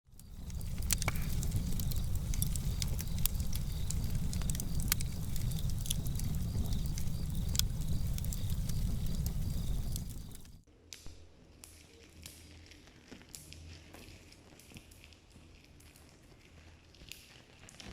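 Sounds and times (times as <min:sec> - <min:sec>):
leaves and twigs crackling: 0:00.1 - 0:10.6.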